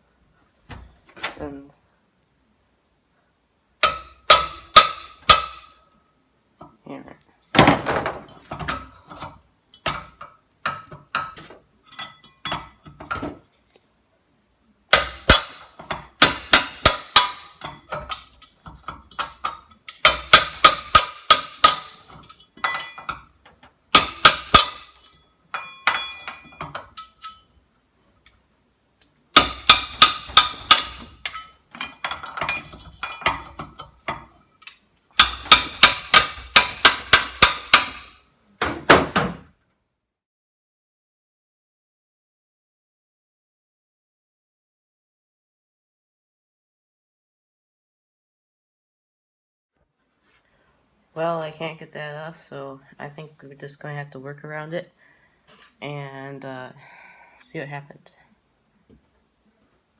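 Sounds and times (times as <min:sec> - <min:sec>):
hammer striking metal crowbar: 0:03.8 - 0:05.8, 0:14.9 - 0:18.4, 0:19.1 - 0:23.2, 0:23.9 - 0:27.4, 0:29.4 - 0:34.2, 0:35.2 - 0:38.2.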